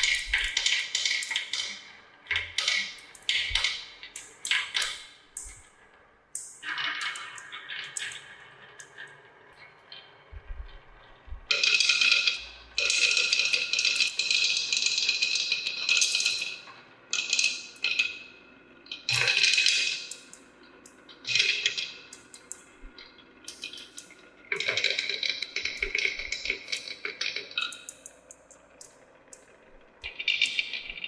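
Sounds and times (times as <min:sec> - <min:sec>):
marbles rolling down track: 0:00.0 - 0:01.8, 0:11.5 - 0:18.2, 0:18.9 - 0:22.6, 0:23.4 - 0:28.8, 0:29.4 - 0:31.0.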